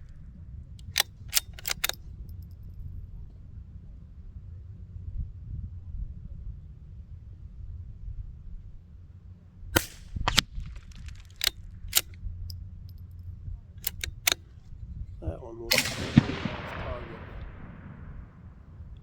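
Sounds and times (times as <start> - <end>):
short sharp clicks: 0.8 - 2.0, 9.8 - 12.2, 13.8 - 14.5
rifle shot with echo: 9.8 - 12.1, 13.8 - 14.4, 15.7 - 19.0.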